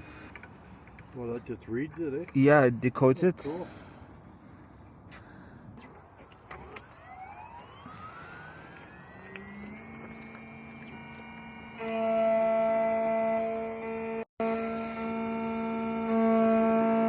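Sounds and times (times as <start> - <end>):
key-cutting machine motor whine: 6.5 - 17.0.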